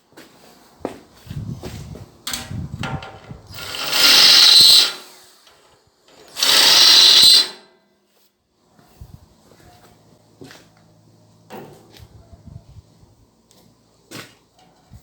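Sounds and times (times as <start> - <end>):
power tool running: 3.5 - 5.4, 6.2 - 7.6.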